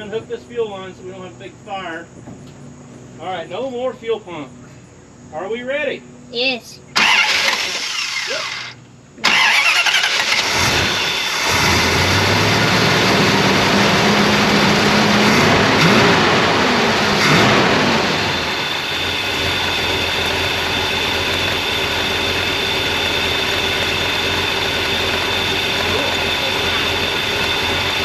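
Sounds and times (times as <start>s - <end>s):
car engine revving and idling: 7.0s - 28.0s.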